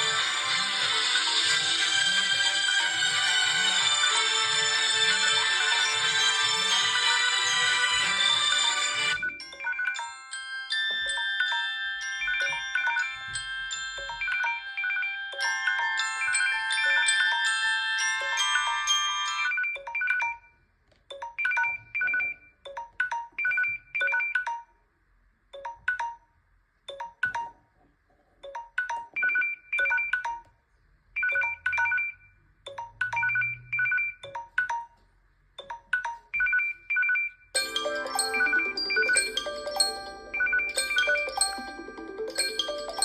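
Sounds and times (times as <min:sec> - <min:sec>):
high electronic ringtone beeps: 0:00.0 - 0:10.3, 0:10.9 - 0:24.8, 0:25.6 - 0:26.3, 0:26.9 - 0:27.6, 0:28.5 - 0:30.5, 0:31.2 - 0:35.0, 0:35.6 - 0:43.0
melodic chime tone: 0:00.2 - 0:20.4, 0:37.6 - 0:43.0.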